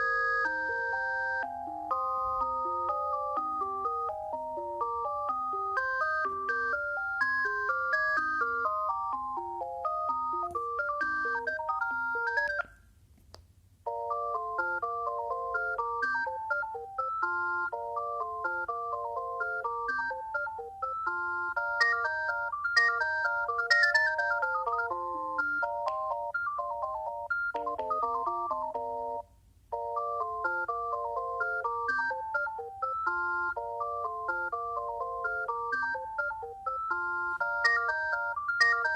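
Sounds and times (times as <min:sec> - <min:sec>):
phone ringtone melody: 0:00.0 - 0:12.7, 0:13.8 - 0:38.9.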